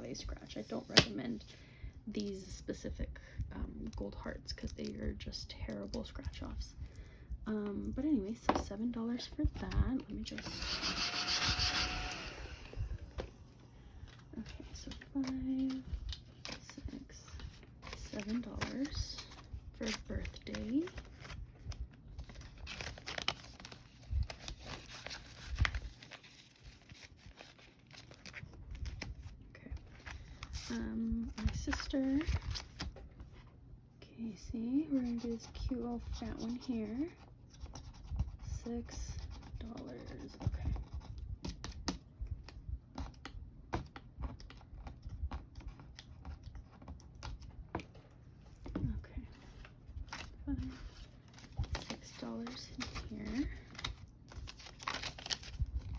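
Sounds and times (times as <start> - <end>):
banknotes crinkling and rustling: 14.0 - 33.4, 42.4 - 55.9
paper bills clicking and tapping: 17.8 - 21.4.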